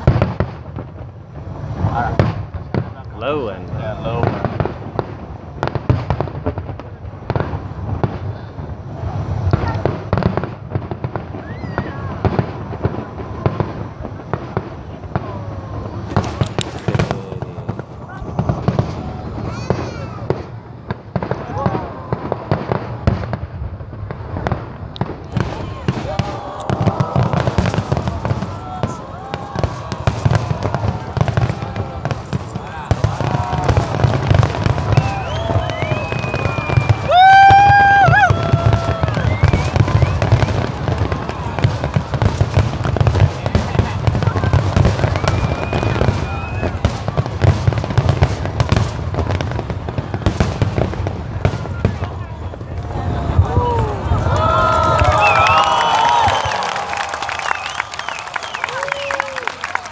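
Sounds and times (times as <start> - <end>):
fireworks bangs: 0.0 - 59.9
people whooping and cheering: 11.2 - 14.0, 15.1 - 20.4, 21.2 - 23.1, 25.3 - 47.8, 52.0 - 59.9.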